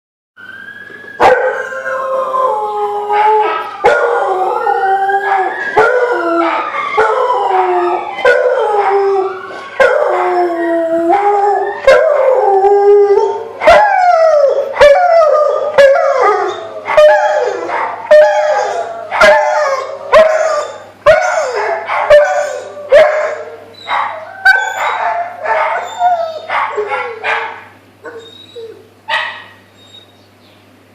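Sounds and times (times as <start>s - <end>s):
ambulance siren: 0.4s - 2.5s, 3.6s - 10.6s, 11.4s - 12.3s
dog howling: 1.2s - 27.5s.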